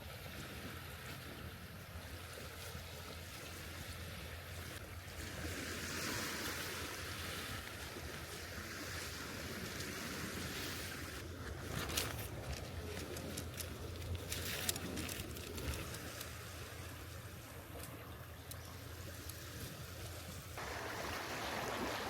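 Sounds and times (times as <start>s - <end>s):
wind rushing through trees: 15.9s - 22.0s.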